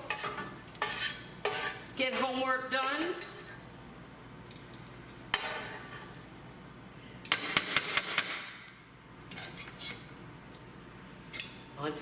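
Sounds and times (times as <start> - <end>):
utensils clinking against pots: 0.0 - 3.6.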